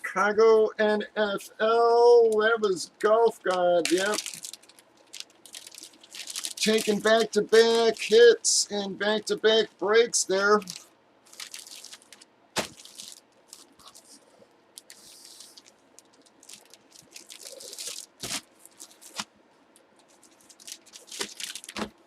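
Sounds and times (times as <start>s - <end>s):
packaging crinkling and rustling: 3.5s - 8.2s, 10.6s - 19.3s, 19.9s - 22.0s.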